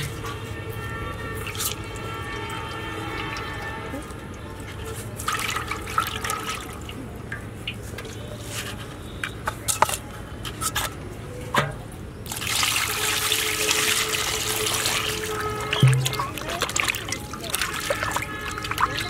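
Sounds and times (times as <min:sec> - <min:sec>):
water pouring: 0:00.0 - 0:08.2, 0:12.2 - 0:19.0.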